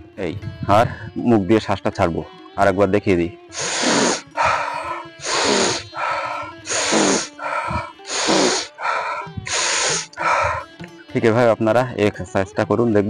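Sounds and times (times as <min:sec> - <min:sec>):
man sniffing in sharply: 0:03.6 - 0:10.7
man breathing out forcefully: 0:03.6 - 0:10.8.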